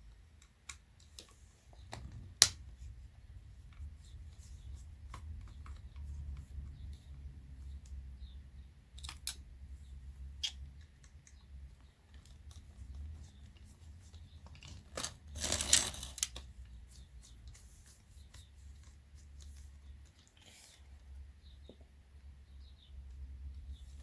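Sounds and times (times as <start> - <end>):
clicks of plastic parts handled: 9.0 - 9.4
scraping rattle: 14.6 - 16.3.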